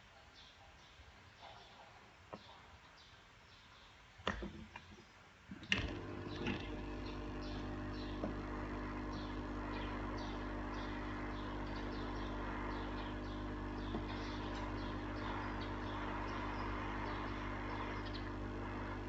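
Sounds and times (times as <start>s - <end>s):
clicks: 5.5s - 9.6s
small electric motor humming: 5.5s - 19.0s.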